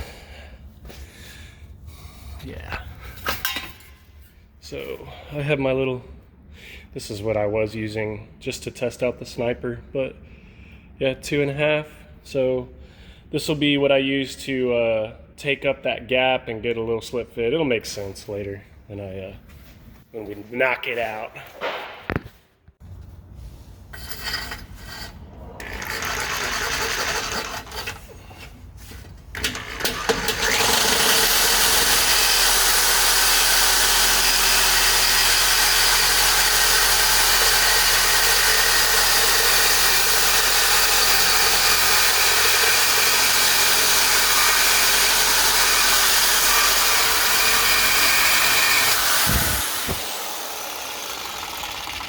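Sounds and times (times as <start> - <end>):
power tool cutting steel pipe: 23.9 - 28.1, 29.4 - 52.0.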